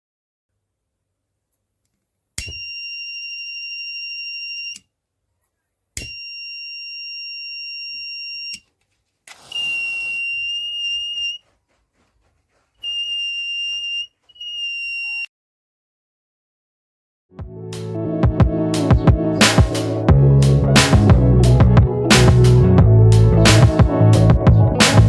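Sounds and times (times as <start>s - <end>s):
alarm buzzer high-pitched tone: 9.4s - 11.4s, 12.8s - 15.3s.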